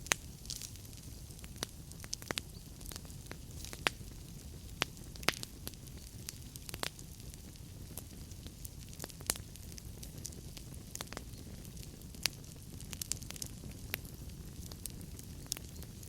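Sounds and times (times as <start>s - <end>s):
firewood crackling and popping: 0.0s - 16.0s
low rumble of flames: 0.0s - 16.0s.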